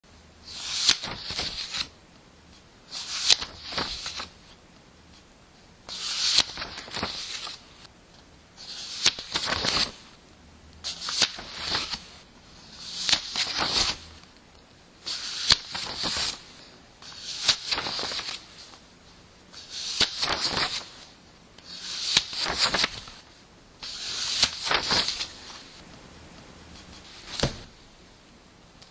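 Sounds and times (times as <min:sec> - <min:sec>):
book pages turning: 0:00.5 - 0:01.9, 0:02.5 - 0:04.5, 0:05.9 - 0:07.9, 0:08.6 - 0:10.2, 0:10.8 - 0:14.4, 0:15.0 - 0:18.8, 0:19.6 - 0:25.9, 0:26.7 - 0:27.7.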